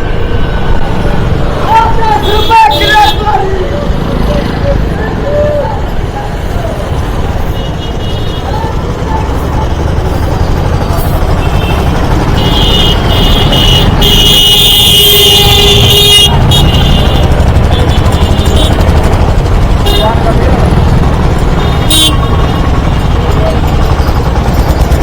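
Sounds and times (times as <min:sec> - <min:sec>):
low rumble of vehicles: 0:00.0 - 0:25.0
car horns honking: 0:07.4 - 0:08.7, 0:11.2 - 0:19.0, 0:19.7 - 0:20.4, 0:21.3 - 0:23.0.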